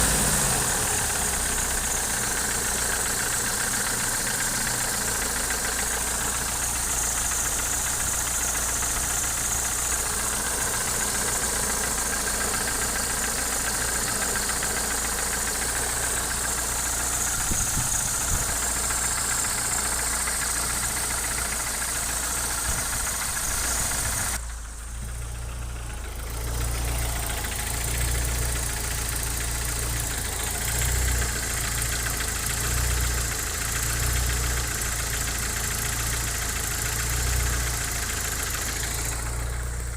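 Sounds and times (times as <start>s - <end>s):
car engine idling: 0.0s - 39.9s
engine knocking: 0.0s - 39.9s.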